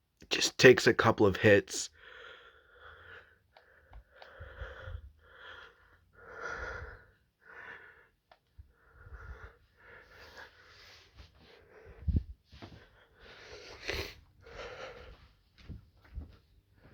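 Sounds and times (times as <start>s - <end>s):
faint clicks: 3.5s - 4.4s.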